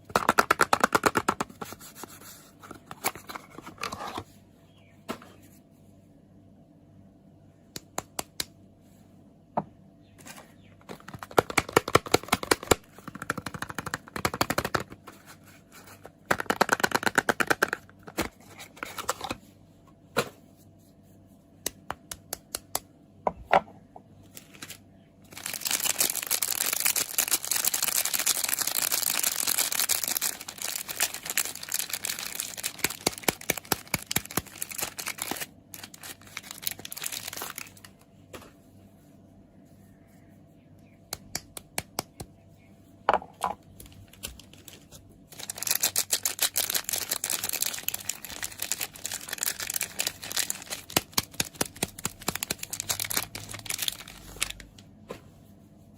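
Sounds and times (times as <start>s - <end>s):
wrapping crinkling and tearing: 24.4s - 38.0s, 43.8s - 54.8s.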